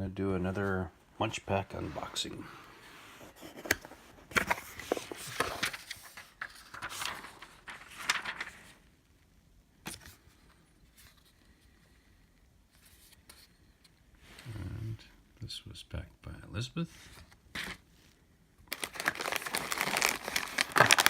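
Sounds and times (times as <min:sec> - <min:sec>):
cardboard packaging rustling: 0:03.2 - 0:08.8, 0:18.7 - 0:21.0.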